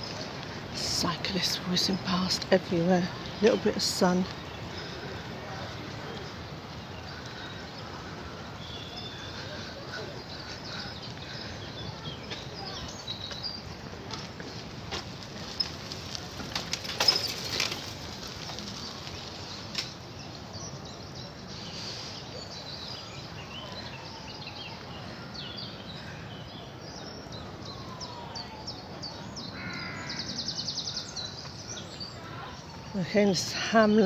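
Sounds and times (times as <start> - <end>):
outdoor background noise: 0.0 - 34.0
small birds chirping: 0.0 - 34.0
sharp clatters: 16.4 - 18.2.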